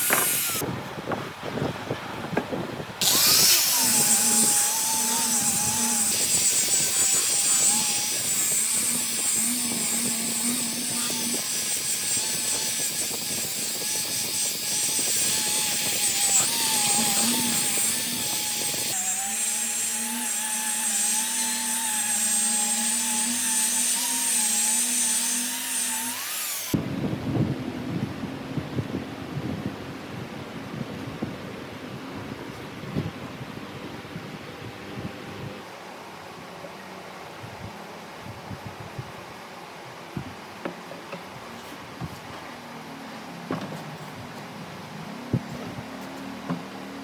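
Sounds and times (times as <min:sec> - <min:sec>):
power tool cutting wood: 0:00.0 - 0:00.6, 0:03.0 - 0:26.8.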